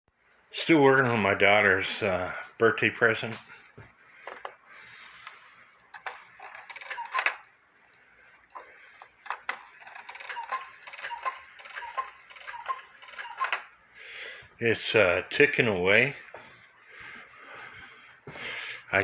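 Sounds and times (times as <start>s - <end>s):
cuckoo clock ticking: 5.1s - 7.5s, 8.5s - 13.7s.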